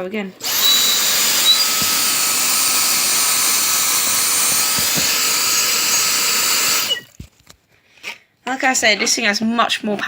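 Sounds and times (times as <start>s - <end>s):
vacuum cleaner running: 0.4s - 7.1s.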